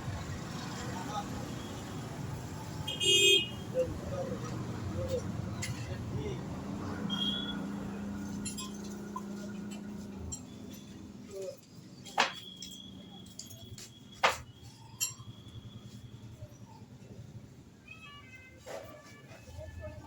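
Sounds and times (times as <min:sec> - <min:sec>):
metallic clinks of hand tools: 0:08.2 - 0:10.6.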